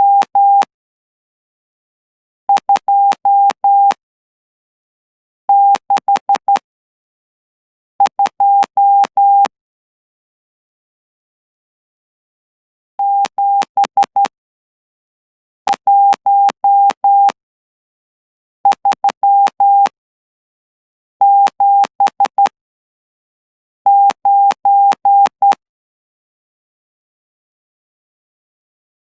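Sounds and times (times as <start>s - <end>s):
morse code beeps: 8.1s - 9.5s, 15.8s - 17.4s, 21.2s - 22.5s, 23.9s - 25.6s.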